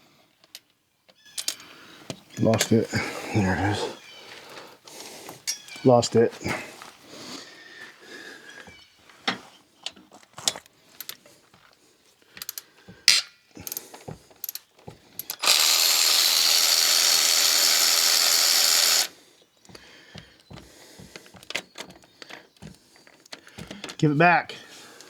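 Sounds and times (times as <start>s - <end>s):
clicks and clanks of metal parts: 0.4s - 1.7s, 12.4s - 15.8s
power tool driving a socket: 12.5s - 19.2s.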